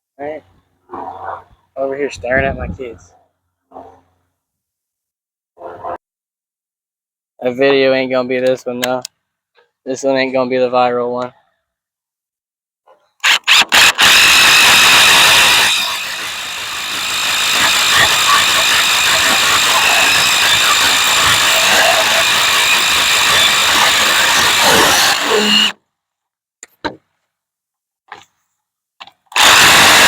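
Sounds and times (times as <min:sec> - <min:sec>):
power drill drilling: 0:13.2 - 0:25.8, 0:29.3 - 0:30.0.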